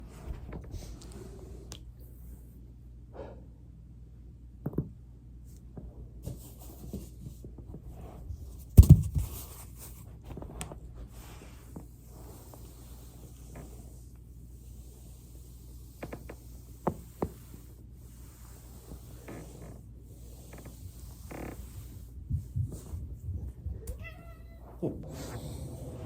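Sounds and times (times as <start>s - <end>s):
body rustling on foam roller: 14.8s - 23.7s.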